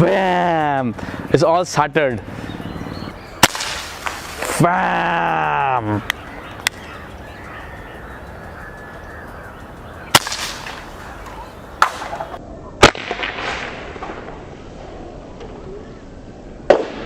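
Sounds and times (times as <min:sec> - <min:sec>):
air pistol shots: 0:03.4 - 0:04.5, 0:10.1 - 0:11.0.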